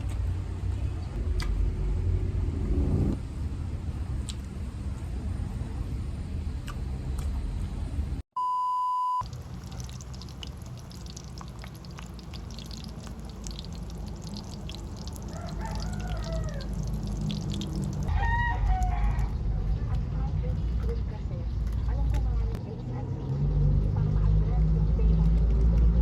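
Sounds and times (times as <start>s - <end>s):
short electronic beep: 8.4s - 9.2s
low background rumble: 9.2s - 26.0s
rooster crowing: 15.2s - 17.2s, 18.0s - 19.4s.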